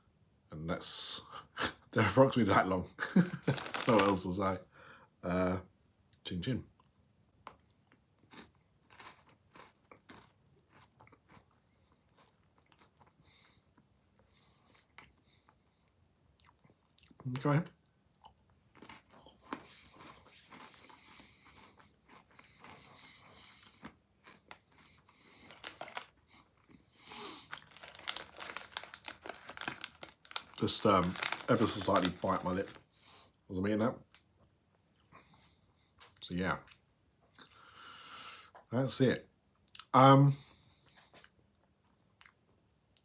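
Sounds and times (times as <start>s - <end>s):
chewing crunches: 3.5s - 4.2s, 7.5s - 13.9s, 16.4s - 32.8s.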